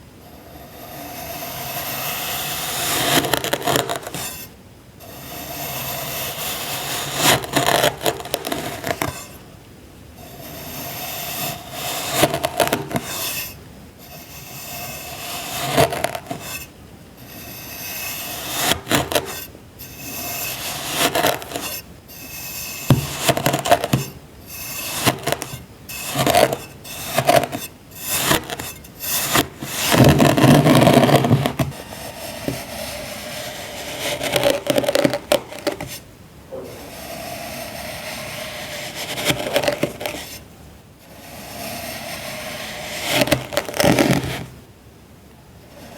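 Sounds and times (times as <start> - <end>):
tool crunching compacted sand: 20.4 - 21.8, 22.8 - 36.0.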